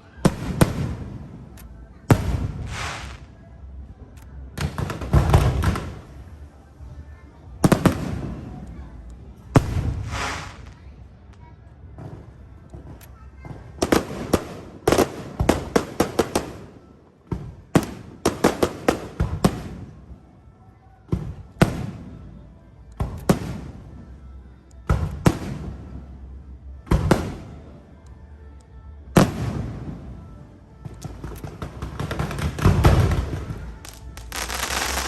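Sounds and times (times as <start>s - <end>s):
fireworks bangs: 2.1s - 3.4s, 9.6s - 11.0s, 30.9s - 35.0s.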